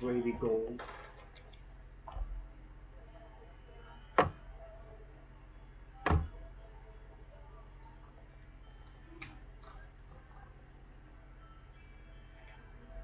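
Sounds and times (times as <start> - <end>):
cards tapped on a table: 4.2 - 4.4
soft knock: 4.2 - 4.4, 6.1 - 6.3.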